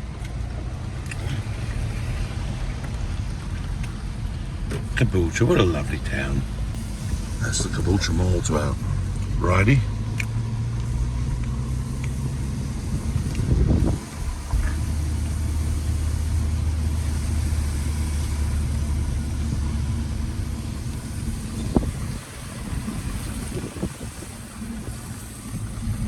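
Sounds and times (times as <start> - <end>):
car engine and road noise: 0.0 - 26.0.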